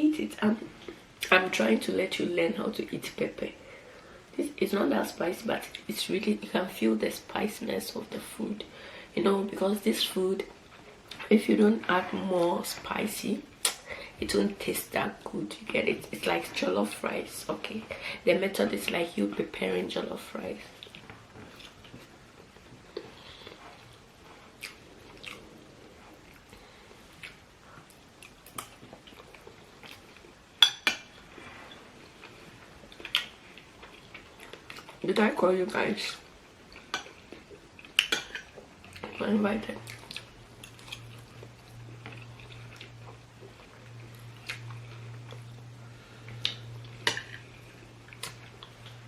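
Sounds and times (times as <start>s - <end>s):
steady low hum: 0.0s - 49.0s
chewing food: 20.6s - 30.4s, 31.1s - 35.0s, 36.3s - 49.0s.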